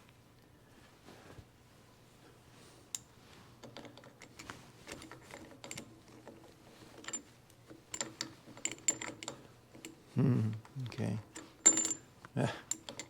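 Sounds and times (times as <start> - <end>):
faint low hum: 0.0 - 13.0
metallic clicks of steel parts: 2.9 - 10.0, 11.3 - 12.0, 12.6 - 13.0.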